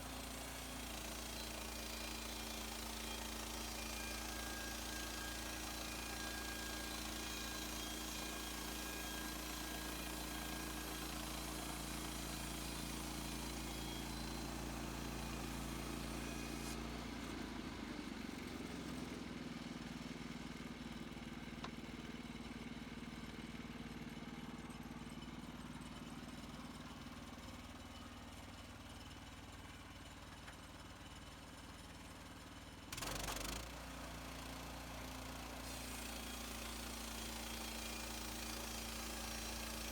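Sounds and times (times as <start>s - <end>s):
sawmill engine running: 0.0s - 19.0s, 33.0s - 39.9s.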